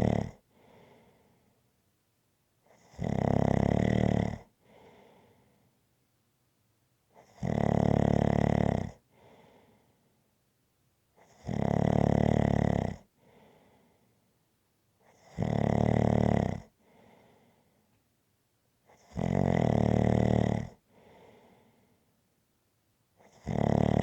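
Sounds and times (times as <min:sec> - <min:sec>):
person snoring: 0:00.0 - 0:00.4, 0:02.8 - 0:04.5, 0:07.2 - 0:08.9, 0:11.3 - 0:13.0, 0:15.1 - 0:16.6, 0:19.0 - 0:20.8, 0:23.3 - 0:24.0.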